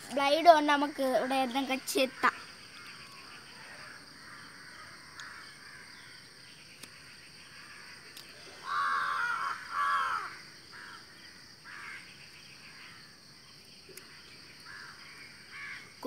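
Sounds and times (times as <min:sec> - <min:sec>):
crow cawing: 0:08.5 - 0:12.1, 0:14.7 - 0:15.9.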